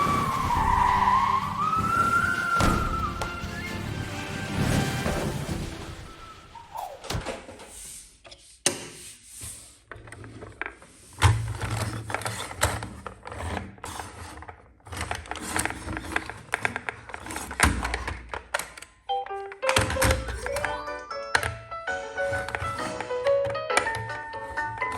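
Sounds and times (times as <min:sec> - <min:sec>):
plastic toy cars rattling: 0:00.0 - 0:06.7, 0:09.9 - 0:21.6, 0:22.2 - 0:24.9.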